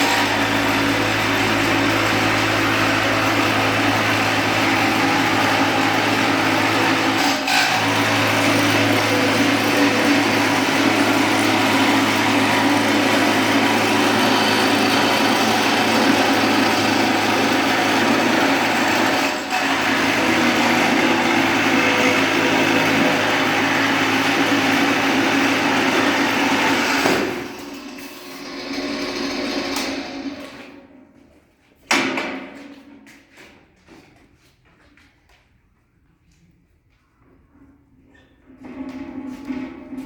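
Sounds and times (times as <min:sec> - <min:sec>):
harsh cutting noise: 0:00.0 - 0:30.5
motor hum: 0:00.0 - 0:30.5.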